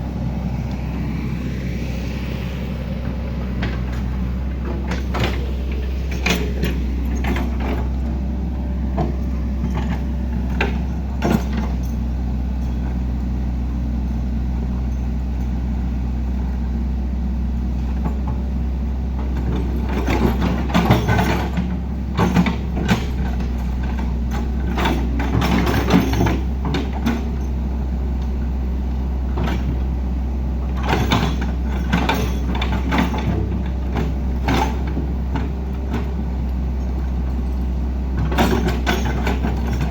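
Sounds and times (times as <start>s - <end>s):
heavy machinery engine running: 0.0s - 39.9s
metallic clanks and knocks: 3.3s - 13.0s, 19.2s - 27.6s, 30.7s - 39.9s.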